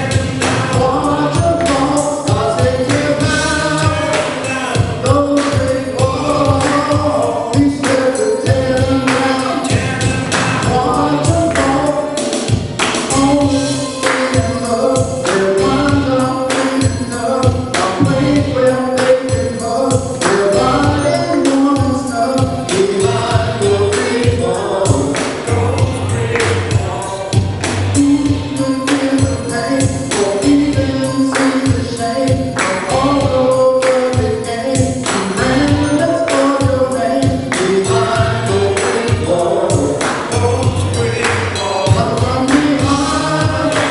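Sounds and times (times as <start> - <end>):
choir singing: 0.0 - 5.1, 6.0 - 12.4, 22.9 - 31.4, 37.6 - 43.9
steady beat: 0.0 - 43.9.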